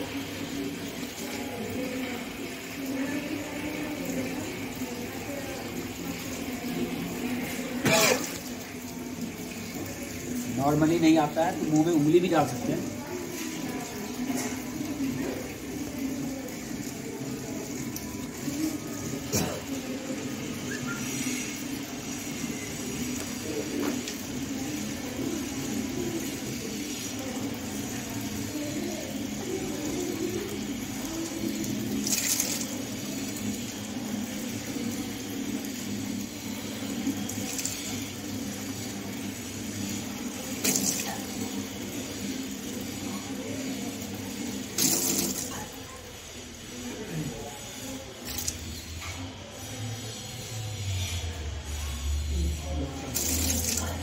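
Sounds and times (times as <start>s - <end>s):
water gushing and splashing: 5.8s - 45.8s, 53.0s - 54.0s.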